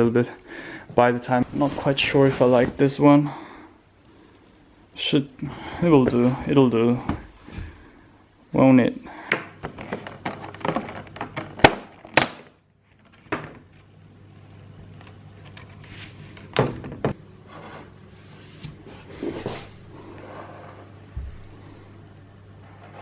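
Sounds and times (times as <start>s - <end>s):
steady low hum: 0.0s - 12.0s, 12.6s - 23.0s.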